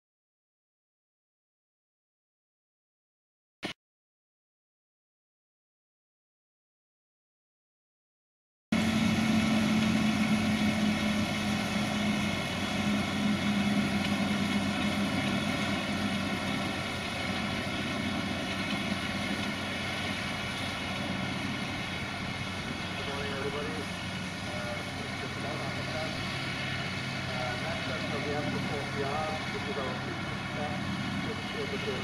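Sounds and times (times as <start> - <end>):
baler machinery running: 8.8 - 32.0
tractor diesel engine droning: 8.8 - 32.0.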